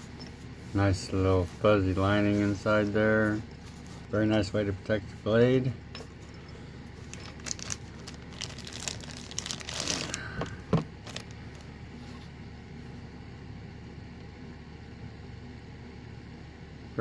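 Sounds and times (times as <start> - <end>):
faint steady background hum: 0.0 - 17.0
folding knife rustling and clicking: 6.0 - 10.2.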